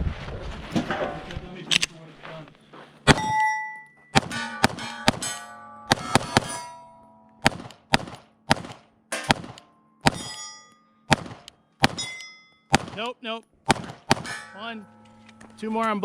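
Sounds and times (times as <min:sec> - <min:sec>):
steel target clanging: 0:03.1 - 0:07.5, 0:09.1 - 0:11.2, 0:11.8 - 0:13.0, 0:13.8 - 0:16.0
gunshots: 0:04.2 - 0:06.7, 0:07.4 - 0:10.3, 0:11.1 - 0:14.4.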